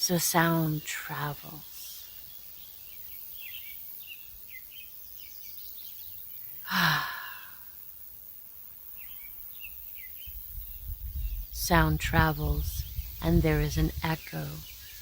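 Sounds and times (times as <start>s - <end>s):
small birds chirping: 0.0s - 15.0s
loud falling sigh: 6.7s - 7.6s.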